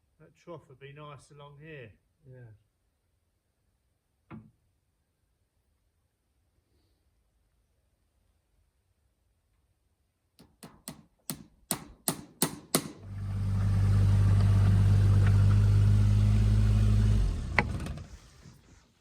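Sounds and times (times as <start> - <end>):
sharp knocks: 10.4 - 13.0
motor humming: 13.0 - 18.6.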